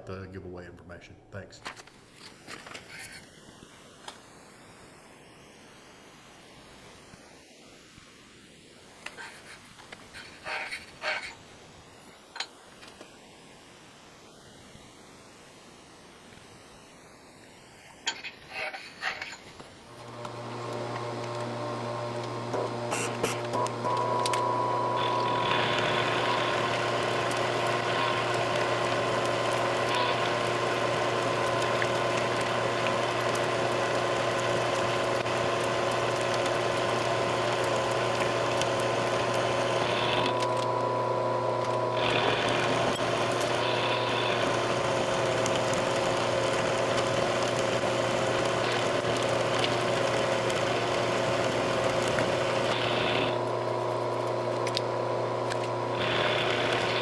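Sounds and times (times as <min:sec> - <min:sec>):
metal cutting noise: 0:18.1 - 0:57.0
milling machine motor hum: 0:19.9 - 0:57.0.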